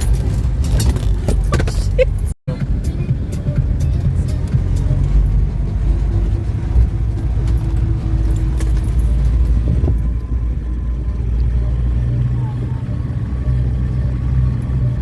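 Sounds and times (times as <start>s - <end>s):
diesel engine drone: 0.0s - 15.0s
light rattles: 3.3s - 10.4s.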